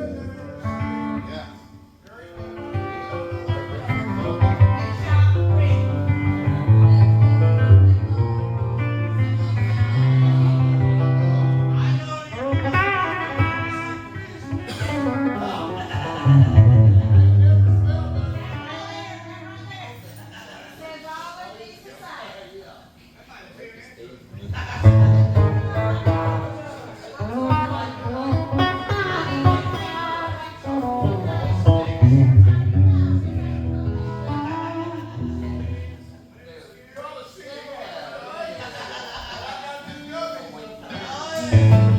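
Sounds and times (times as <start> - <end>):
guitar music: 0.0 - 20.3, 24.4 - 36.4, 41.4 - 41.9
bass line: 3.8 - 19.8, 24.5 - 26.8, 30.6 - 36.2, 41.4 - 41.9
low bass note: 16.2 - 19.8.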